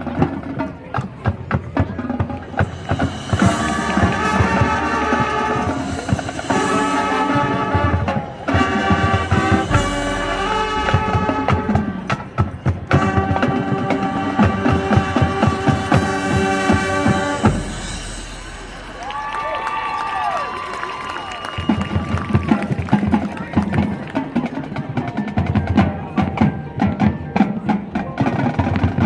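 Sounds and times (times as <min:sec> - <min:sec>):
drum-line beat: 0:00.0 - 0:29.0
brass chords: 0:01.7 - 0:20.5.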